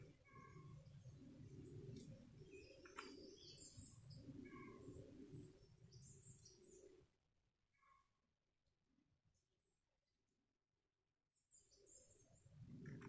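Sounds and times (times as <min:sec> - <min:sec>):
faint birdsong: 0:00.0 - 0:07.1, 0:11.3 - 0:13.0.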